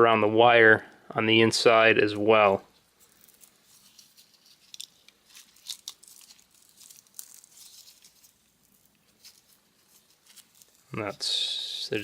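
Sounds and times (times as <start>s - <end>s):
plastic crinkling and crackling: 2.7s - 12.0s.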